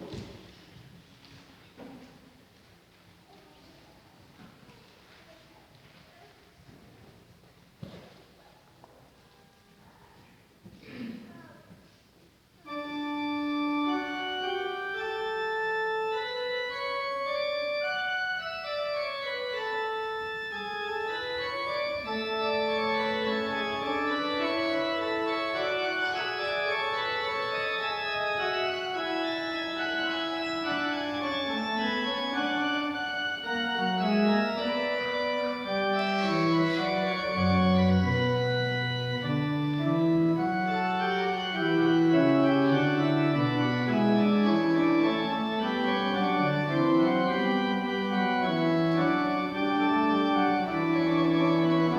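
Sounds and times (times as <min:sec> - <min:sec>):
church organ playing chords: 0:12.6 - 0:51.9.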